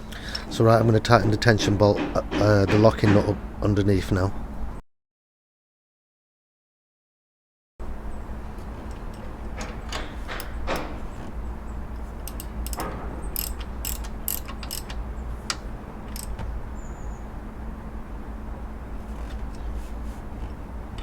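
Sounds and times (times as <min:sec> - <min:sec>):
steady low hum: 0:00.0 - 0:04.8, 0:07.8 - 0:21.0
metal on metal clicks: 0:08.6 - 0:16.6
socket ratchet clicking: 0:08.8 - 0:11.4, 0:12.0 - 0:16.4.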